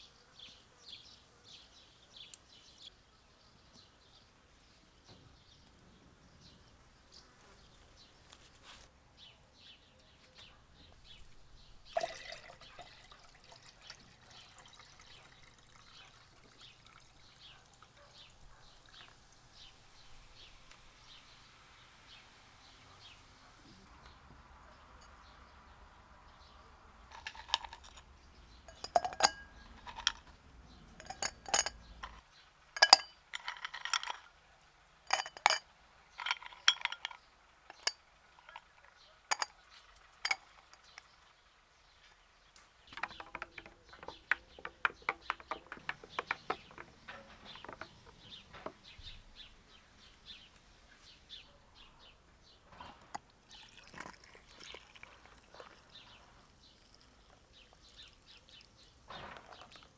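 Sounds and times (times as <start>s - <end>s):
glass and dishware clinking: 11.9s - 13.7s, 27.1s - 28.0s, 28.7s - 30.2s, 31.0s - 32.2s, 32.8s - 34.2s, 35.1s - 35.6s, 36.2s - 38.6s, 39.3s - 39.5s, 40.2s - 41.1s.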